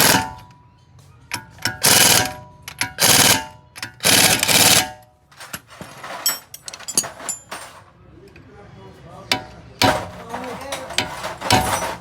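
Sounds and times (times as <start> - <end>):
impact wrench hammering: 0.0 - 0.5, 1.3 - 5.0, 9.3 - 12.0.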